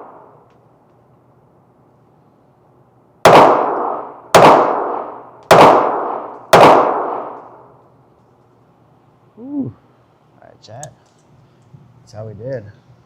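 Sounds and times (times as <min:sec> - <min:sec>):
pistol shots with echo: 0:03.2 - 0:07.6.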